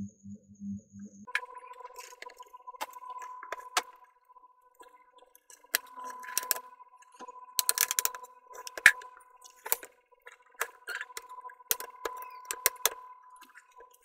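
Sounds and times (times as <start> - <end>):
plastic clips snapping: 10.6 - 13.0.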